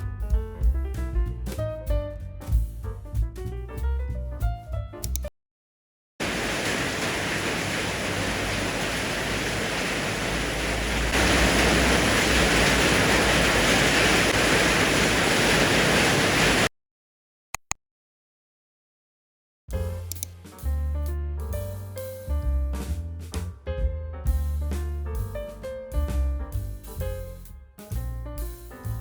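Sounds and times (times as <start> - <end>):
brief clicks: 5.0 - 5.3, 20.0 - 20.4
heavy rain: 6.2 - 16.7.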